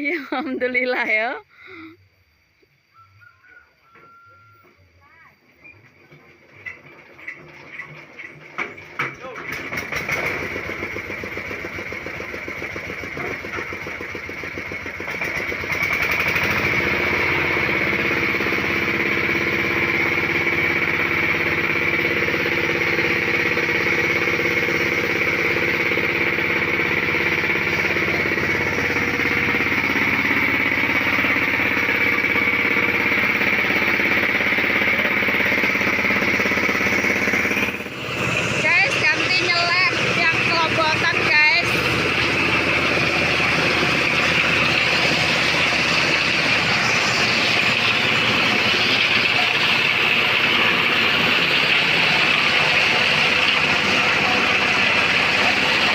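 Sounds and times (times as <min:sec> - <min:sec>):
corn sheller running: 0:04.1 - 0:55.9.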